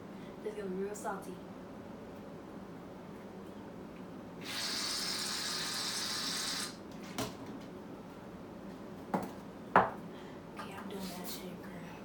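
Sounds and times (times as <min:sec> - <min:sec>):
salt pouring hiss: 0:04.4 - 0:06.8.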